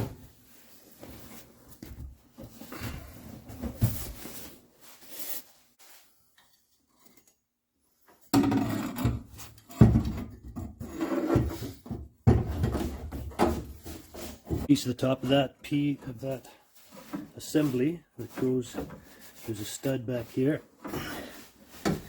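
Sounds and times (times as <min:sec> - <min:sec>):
bumps and scraping: 0:08.4 - 0:22.0.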